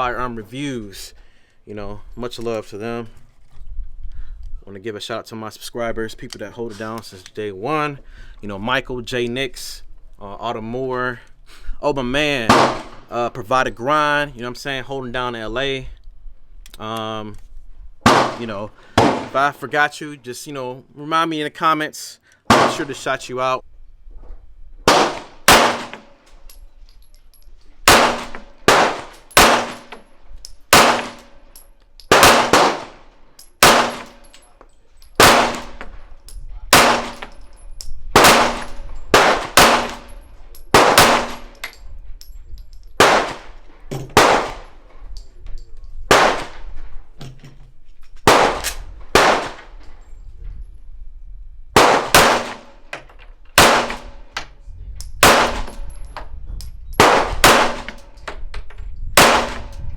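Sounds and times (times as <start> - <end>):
gunshots with ringing echo: 12.5 - 13.0, 18.0 - 19.4, 22.5 - 23.0, 24.9 - 26.1, 27.8 - 29.9, 30.7 - 31.3, 32.1 - 34.3, 35.2 - 35.8, 36.7 - 37.4, 38.2 - 41.6, 43.0 - 43.6, 44.2 - 44.7, 46.1 - 46.6, 48.3 - 49.7, 51.8 - 52.7, 53.6 - 54.2, 55.2 - 55.9, 57.0 - 58.0, 59.2 - 59.7.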